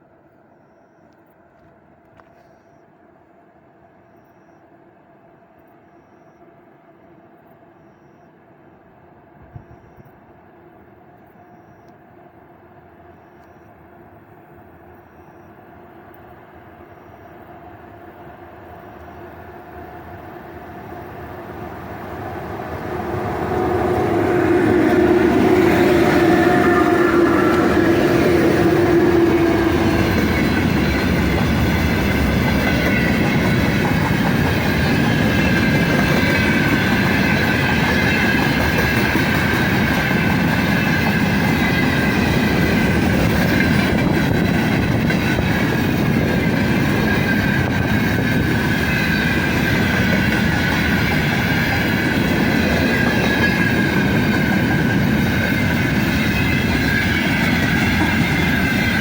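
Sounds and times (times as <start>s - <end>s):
train wheels rumbling on rails: 18.1s - 59.0s
high wheel squeal: 23.1s - 59.0s.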